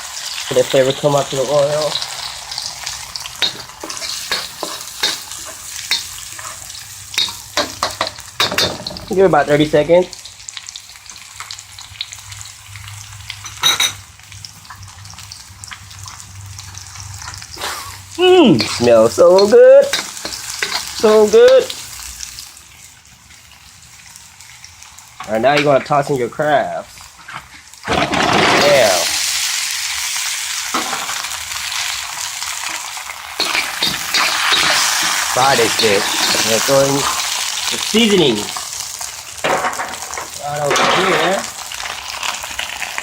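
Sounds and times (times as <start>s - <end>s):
aromatics sizzling in hot oil: 0.0s - 43.0s
stirring clatter in wok: 3.4s - 9.1s, 19.9s - 21.0s.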